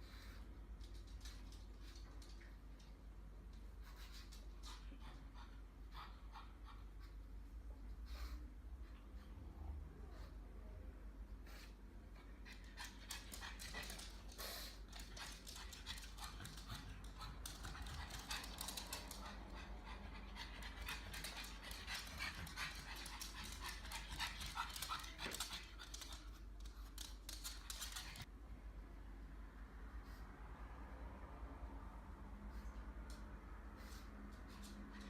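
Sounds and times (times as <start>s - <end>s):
dog panting: 11.5s - 28.3s.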